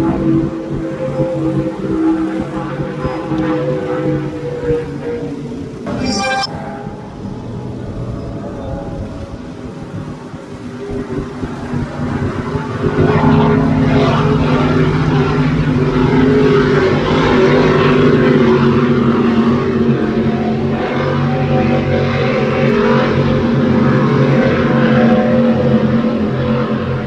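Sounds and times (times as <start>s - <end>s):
powerboat engines droning: 6.6s - 27.0s.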